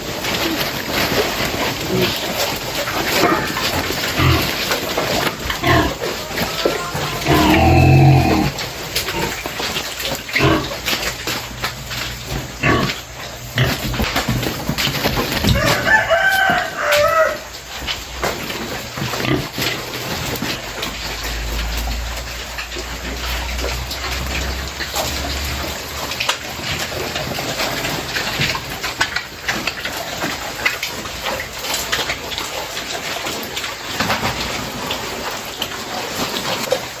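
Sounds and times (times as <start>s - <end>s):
pigs crunching leaves: 0.0s - 37.0s
pig grunts: 1.6s - 9.5s, 10.3s - 10.9s, 12.6s - 14.0s.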